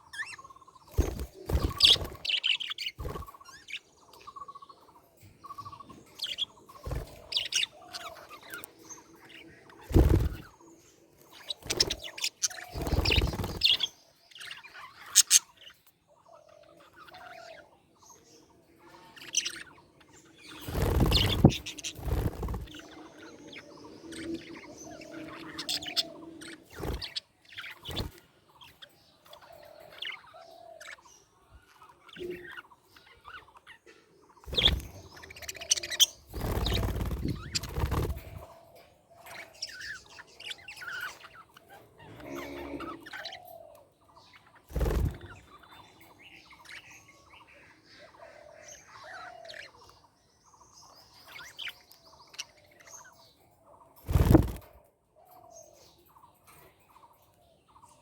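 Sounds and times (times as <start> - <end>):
budgerigars chirping: 0.0 - 53.4.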